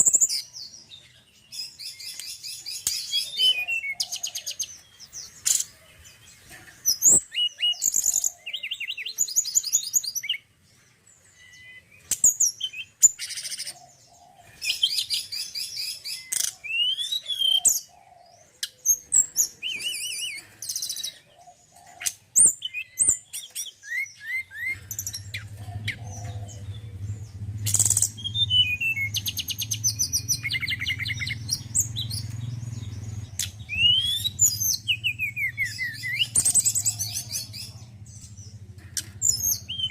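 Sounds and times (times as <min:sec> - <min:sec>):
bird singing with chirps and trills: 0:00.0 - 0:39.9
steady low hum: 0:24.7 - 0:39.9.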